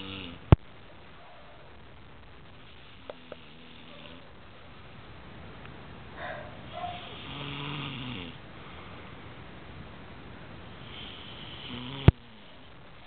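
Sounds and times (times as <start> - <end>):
woman snoring: 0.0 - 0.5, 7.2 - 8.4, 10.8 - 12.6.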